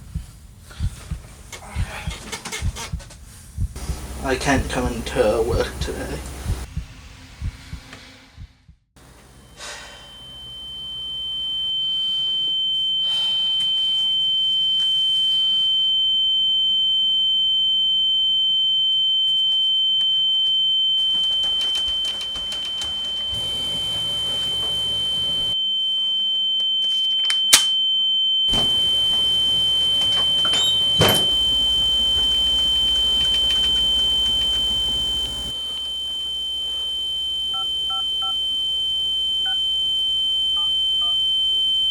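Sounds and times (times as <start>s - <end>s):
high-pitched tone: 28.5s - 41.9s.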